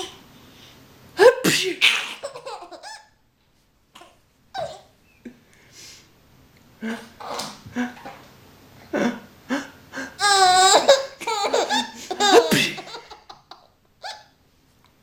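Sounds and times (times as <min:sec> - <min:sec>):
baby laughing: 0:01.8 - 0:03.1, 0:04.0 - 0:04.9, 0:10.2 - 0:14.3.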